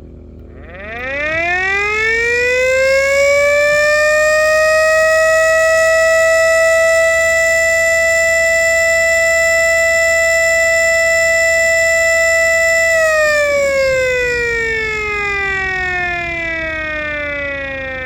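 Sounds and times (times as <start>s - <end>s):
motor siren wailing: 0.5s - 18.0s.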